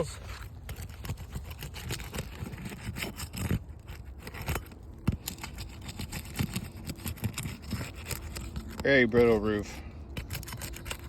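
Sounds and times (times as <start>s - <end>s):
shingles scraping and crackling: 0.0s - 11.0s.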